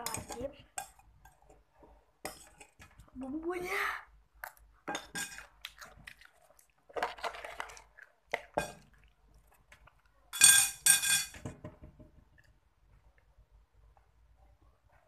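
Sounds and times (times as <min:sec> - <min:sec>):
cutlery clinking against dish: 0:04.9 - 0:05.4, 0:10.3 - 0:11.5.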